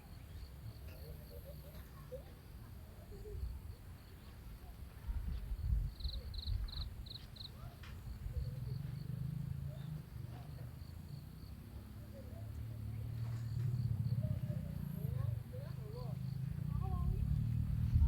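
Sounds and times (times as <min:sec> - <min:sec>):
crickets chirping: 0:05.5 - 0:18.0.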